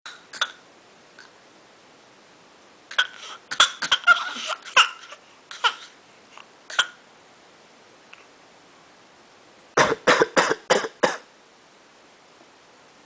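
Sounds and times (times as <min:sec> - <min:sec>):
child pretend coughing: 0:02.9 - 0:05.9, 0:09.8 - 0:11.3.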